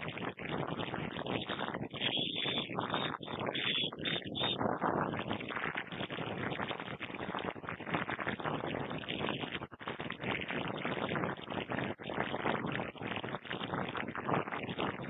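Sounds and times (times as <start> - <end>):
shortwave radio static hiss: 1.0 - 7.7.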